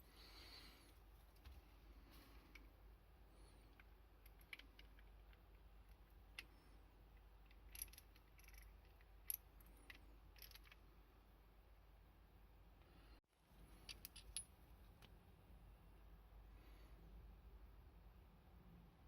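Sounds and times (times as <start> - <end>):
metal tool parts clicking: 7.5 - 10.8.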